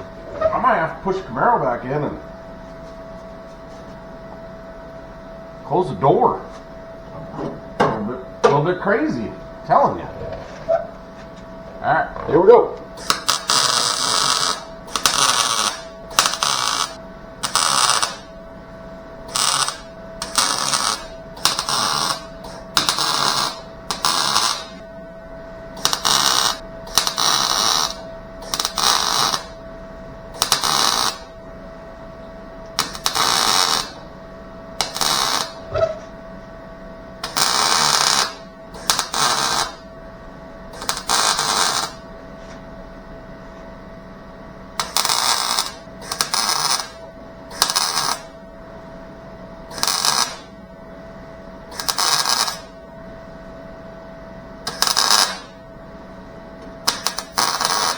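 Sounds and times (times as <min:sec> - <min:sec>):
steady welder hum: 0:00.0 - 0:57.9
welding arc crackling: 0:12.2 - 0:18.3, 0:19.2 - 0:24.8, 0:25.8 - 0:29.6, 0:30.3 - 0:31.3, 0:32.7 - 0:34.0, 0:34.8 - 0:35.7, 0:37.2 - 0:39.8, 0:40.7 - 0:42.1, 0:44.8 - 0:48.3, 0:49.7 - 0:50.5, 0:51.7 - 0:52.7, 0:54.6 - 0:55.6, 0:56.8 - 0:57.9.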